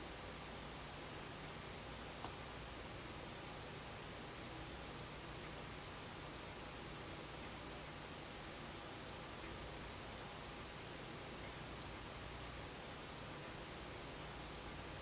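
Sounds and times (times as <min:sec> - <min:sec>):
small birds chirping: 0:08.2 - 0:11.8, 0:12.6 - 0:13.5.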